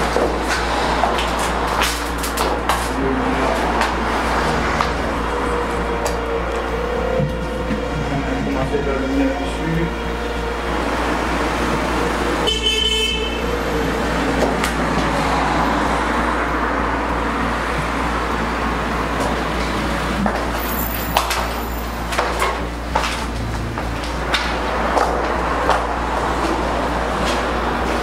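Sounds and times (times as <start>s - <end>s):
road traffic noise: 0.0s - 28.0s
car horn toot: 11.8s - 14.6s.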